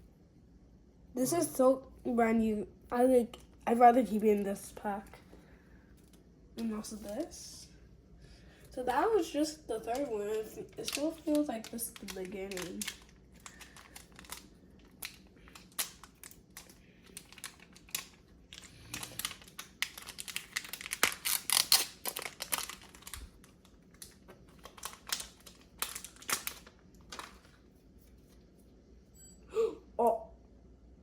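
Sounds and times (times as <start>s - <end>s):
cards clicking and crinkling: 9.9s - 28.3s.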